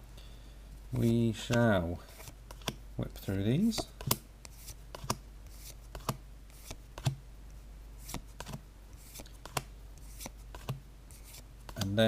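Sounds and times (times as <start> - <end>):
cards being flicked through: 1.0 - 2.8, 3.5 - 7.2, 8.0 - 12.0.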